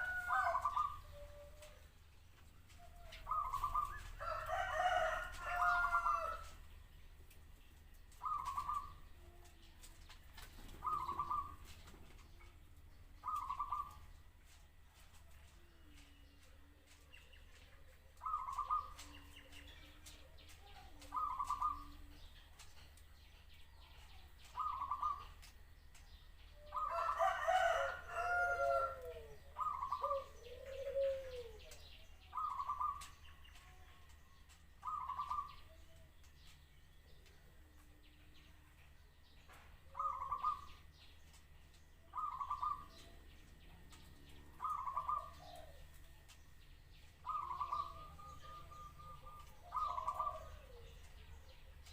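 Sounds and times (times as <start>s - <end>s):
rooster crowing: 0.0s - 1.0s, 4.2s - 6.5s, 26.7s - 29.4s
dove cooing: 0.0s - 1.9s, 2.7s - 6.6s, 8.2s - 9.6s, 10.4s - 12.3s, 13.2s - 14.2s, 17.6s - 22.4s, 24.0s - 25.5s, 26.6s - 33.8s, 34.8s - 36.1s, 39.9s - 40.8s, 42.1s - 46.4s, 47.2s - 51.9s.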